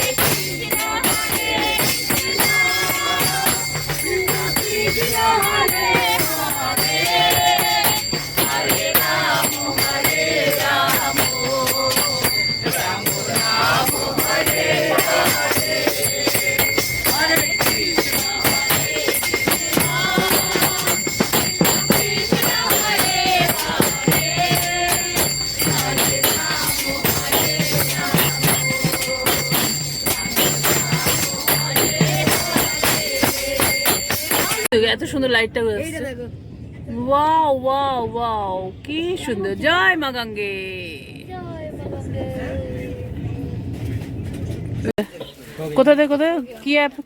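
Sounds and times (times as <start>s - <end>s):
fast rattling percussion: 0.0s - 34.7s.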